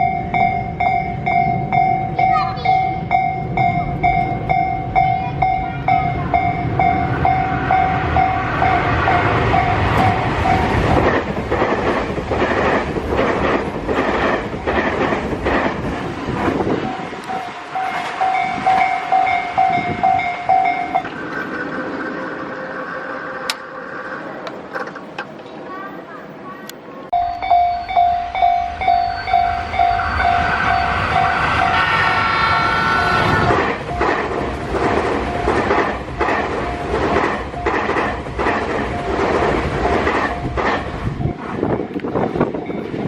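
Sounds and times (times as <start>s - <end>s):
level-crossing warning bell: 0.0s - 11.1s, 16.5s - 21.6s, 27.1s - 43.0s
train wheels clacking: 0.0s - 22.2s, 27.2s - 43.0s
electric train rumbling: 0.0s - 43.0s.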